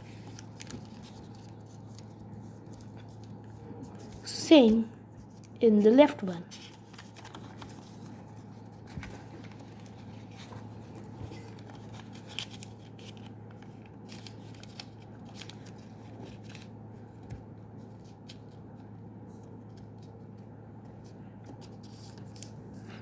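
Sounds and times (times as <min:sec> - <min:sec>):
paper rustling and crinkling: 0:00.0 - 0:23.0
steady low hum: 0:00.0 - 0:23.0.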